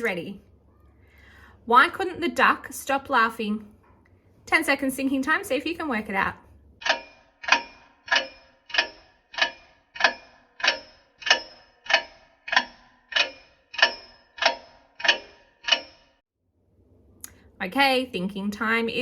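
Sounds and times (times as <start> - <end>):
clock ticking: 6.8 - 16.0.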